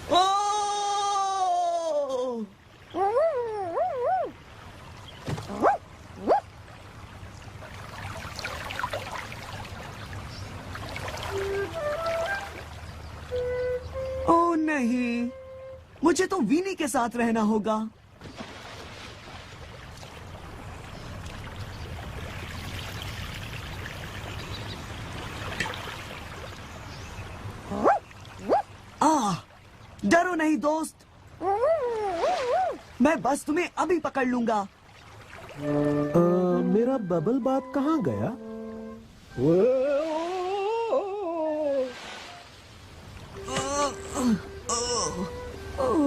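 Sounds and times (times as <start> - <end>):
cartoon dog whining: 3.0 - 4.3, 31.4 - 32.8
water running and splashing: 4.4 - 14.2, 18.2 - 26.8, 34.5 - 36.1
dog yelping: 5.5 - 6.4, 27.7 - 28.7.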